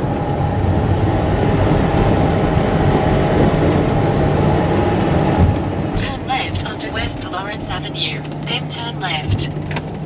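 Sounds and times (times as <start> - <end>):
road and engine rumble: 0.0 - 10.0
faint steady whine: 5.9 - 9.9.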